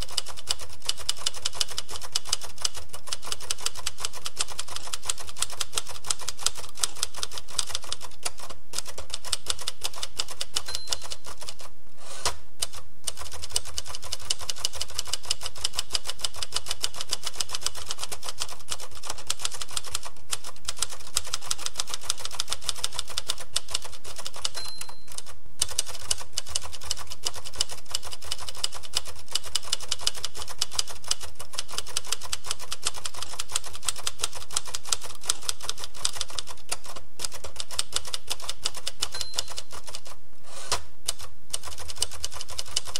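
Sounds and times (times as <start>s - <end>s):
typewriter keys clacking: 0.0s - 42.9s
typewriter carriage bell ding: 10.6s - 11.5s, 24.4s - 25.3s, 39.1s - 39.8s.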